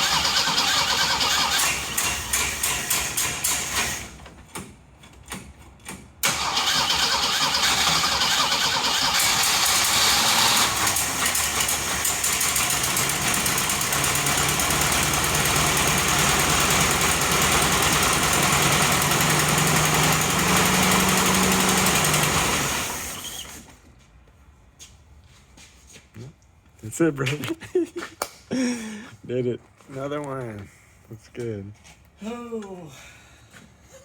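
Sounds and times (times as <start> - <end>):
engine idling and dying: 0.0 - 4.2, 6.2 - 23.7.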